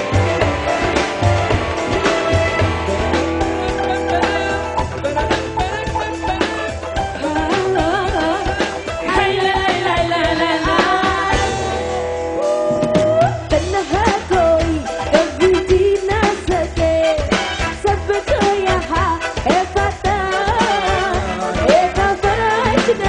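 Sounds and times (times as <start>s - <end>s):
live band playing pop song: 0.0s - 23.0s
person singing: 3.1s - 17.4s.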